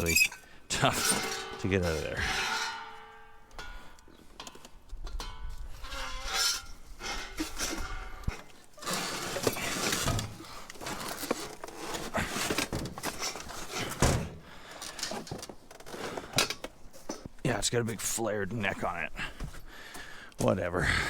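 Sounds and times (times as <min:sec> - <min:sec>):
scrap metal clanking in dumpster: 0:00.0 - 0:03.9, 0:05.2 - 0:15.2
rustling debris: 0:00.0 - 0:17.4.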